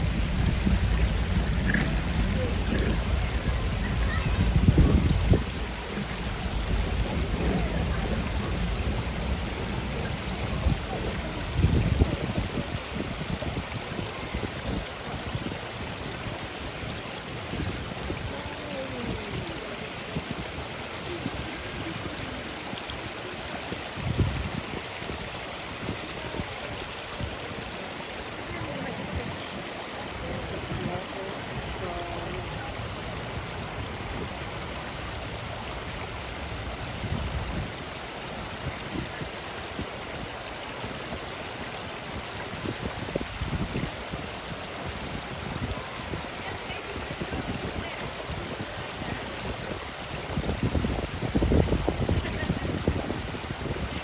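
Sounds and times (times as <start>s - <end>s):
low rumble: 0.0s - 12.4s
running water rushing: 0.0s - 54.0s.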